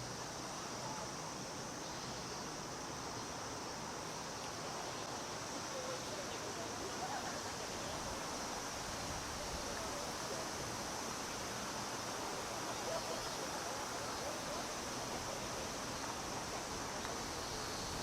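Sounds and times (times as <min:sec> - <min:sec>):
cicadas droning: 0:00.0 - 0:18.0
faint murmur: 0:05.4 - 0:18.0.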